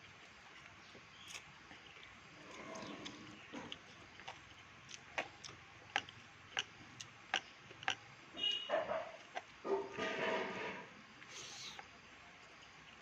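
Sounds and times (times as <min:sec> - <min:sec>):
chewing with wet lip-smacking: 0:00.2 - 0:08.0, 0:09.2 - 0:09.6.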